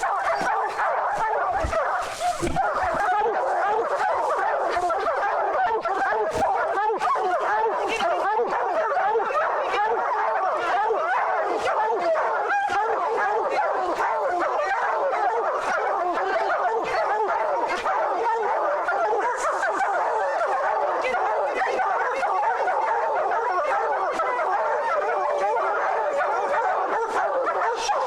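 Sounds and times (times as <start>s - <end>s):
hounds baying and yelping: 0.0s - 28.0s.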